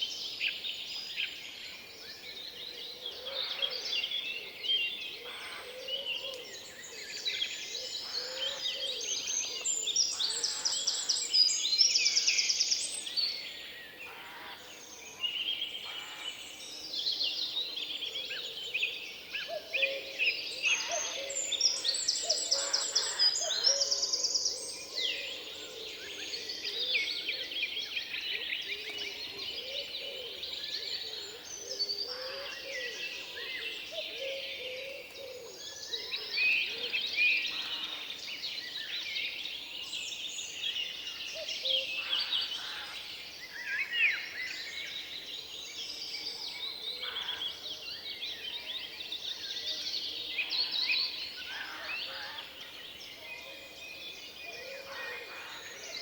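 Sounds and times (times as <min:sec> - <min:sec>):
songbirds singing: 0:00.0 - 0:56.0.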